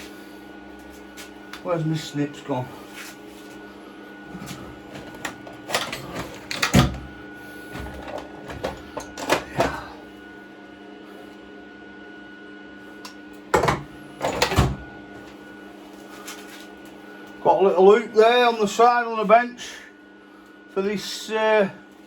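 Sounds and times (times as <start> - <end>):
welder electrical hum: 0.0 - 22.0.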